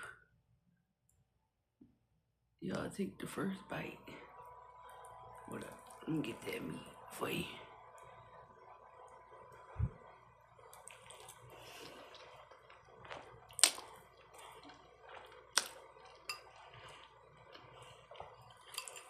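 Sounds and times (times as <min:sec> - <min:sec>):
soft wet chewing: 0:04.8 - 0:06.1, 0:09.0 - 0:19.0.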